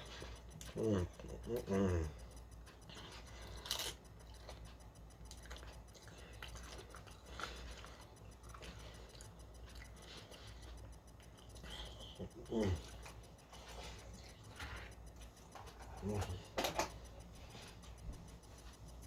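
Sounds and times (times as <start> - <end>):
chewing crunchy chips: 0.0 - 17.0.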